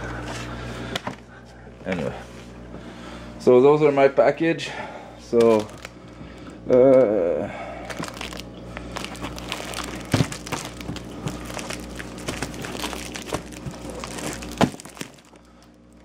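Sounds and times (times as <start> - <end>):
packages rustling and crinkling: 5.2 - 16.0.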